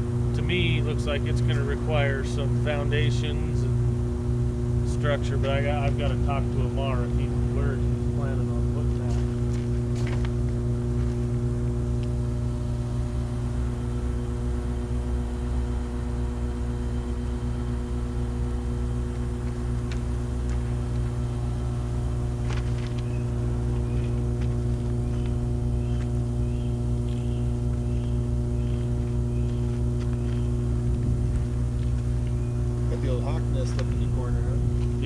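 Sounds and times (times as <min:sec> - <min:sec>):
transformer electrical hum: 0:00.0 - 0:35.0.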